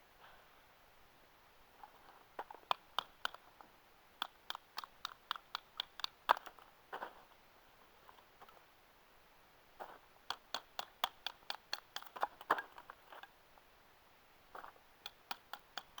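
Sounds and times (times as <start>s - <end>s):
wooden baton tapping knife spine: 15.0s - 16.0s.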